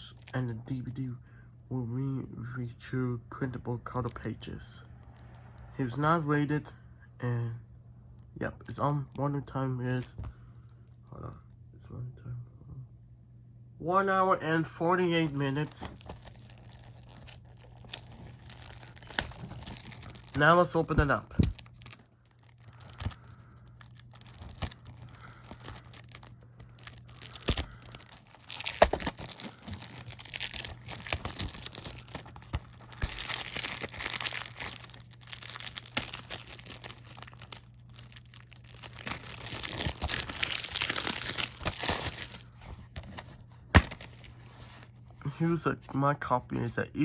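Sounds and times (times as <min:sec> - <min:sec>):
plastic wrapping tearing and crinkling: 0:15.3 - 0:44.9.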